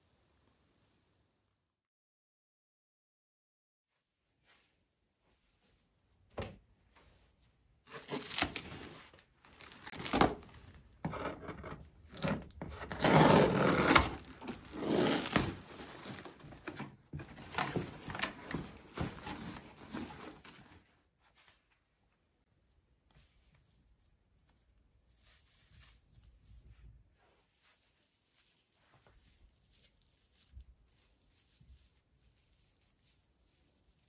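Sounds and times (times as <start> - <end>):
packaging crinkling and tearing: 7.9 - 10.8, 12.1 - 20.6.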